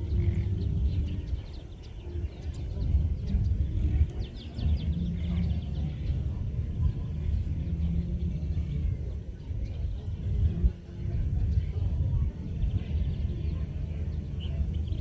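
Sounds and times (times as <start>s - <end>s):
distant social gathering: 0.0s - 15.0s.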